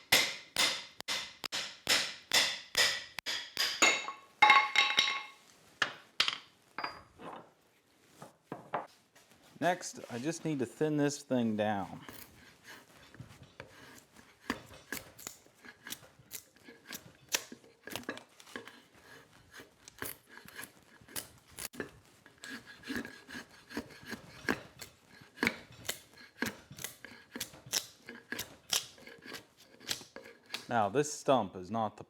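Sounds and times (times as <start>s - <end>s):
hand tool shaving wood: 11.7s - 30.8s.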